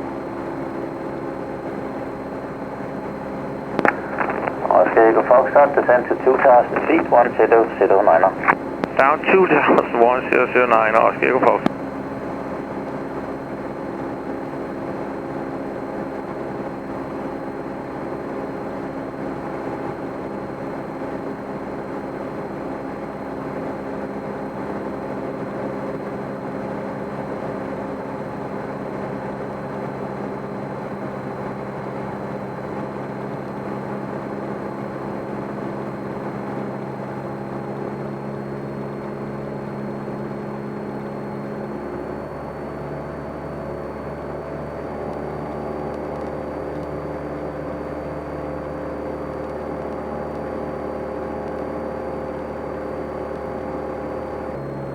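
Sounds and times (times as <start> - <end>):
airplane engine and propeller droning: 0.0 - 54.9.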